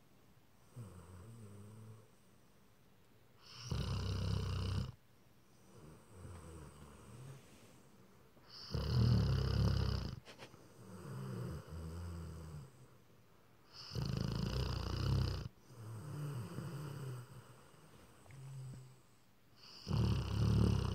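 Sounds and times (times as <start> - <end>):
dog snoring: 0.6 - 2.1, 3.4 - 5.0, 5.6 - 7.6, 8.4 - 12.9, 13.7 - 19.0, 19.6 - 20.9.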